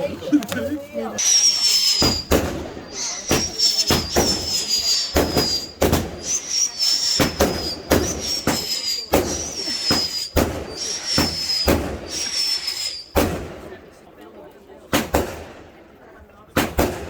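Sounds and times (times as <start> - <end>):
firework whistles: 1.2 - 13.8
firework bangs: 1.2 - 13.9, 14.9 - 15.8, 16.5 - 17.0.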